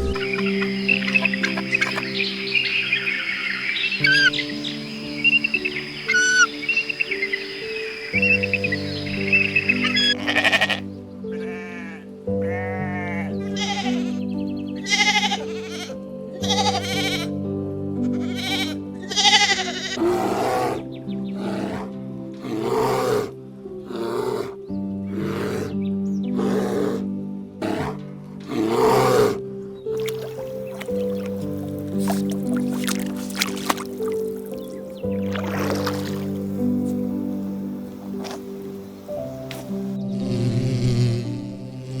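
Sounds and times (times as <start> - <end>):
animal calls: 0.0 - 10.8
soft background music: 0.0 - 42.0.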